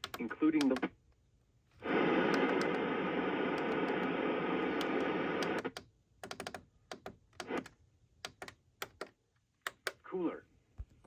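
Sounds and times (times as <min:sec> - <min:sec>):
radio static hiss: 0:01.8 - 0:05.7
irregular clicks: 0:04.7 - 0:10.0.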